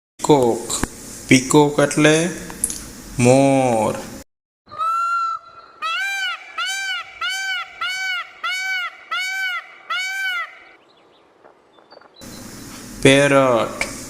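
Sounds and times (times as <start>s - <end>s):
peacock calling: 4.7s - 12.8s.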